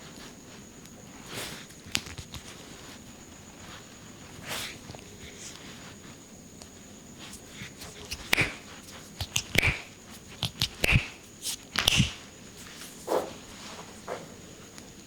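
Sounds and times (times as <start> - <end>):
hands slapping on skin: 7.6 - 12.2.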